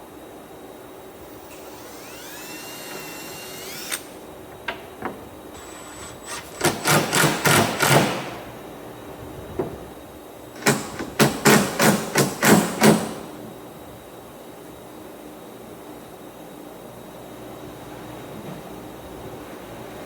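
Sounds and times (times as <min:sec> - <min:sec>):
hammer striking wood: 0:06.6 - 0:08.3, 0:10.6 - 0:13.2.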